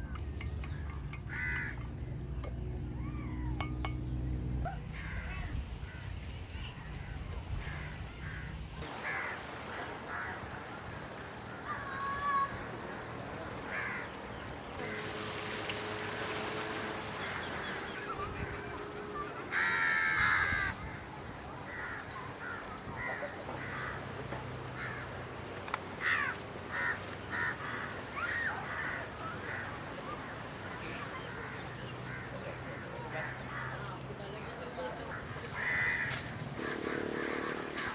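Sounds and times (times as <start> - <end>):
outdoor background: 0.0 - 37.9
crows cawing: 0.7 - 1.8, 7.6 - 9.5, 13.7 - 14.1, 18.4 - 21.0, 21.7 - 24.0, 24.8 - 25.2, 26.0 - 29.7, 35.1 - 37.9.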